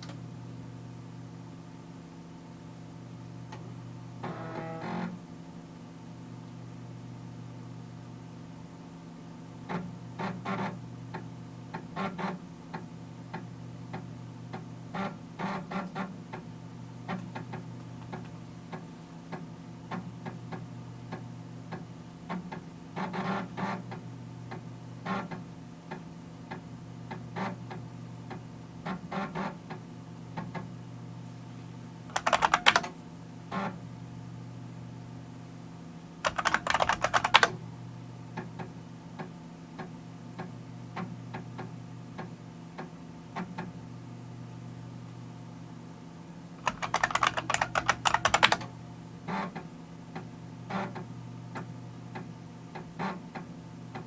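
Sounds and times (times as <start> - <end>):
spindle motor hum: 3.4 - 5.2
disk head clicking and buzzing: 32.1 - 32.9, 36.2 - 37.6, 46.6 - 48.7.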